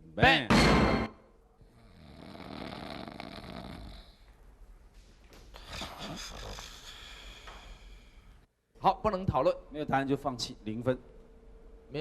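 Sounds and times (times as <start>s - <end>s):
person snoring: 1.6s - 4.2s, 5.6s - 8.1s.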